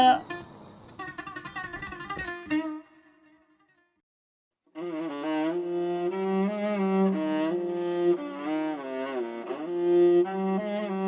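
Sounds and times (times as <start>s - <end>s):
slow sliding melody: 4.8s - 11.0s.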